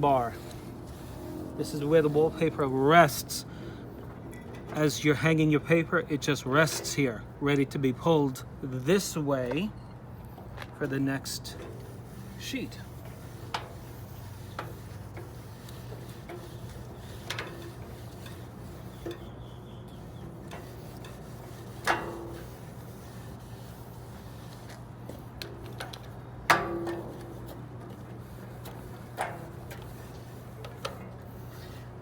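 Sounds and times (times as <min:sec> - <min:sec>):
steady low hum: 0:00.0 - 0:08.8.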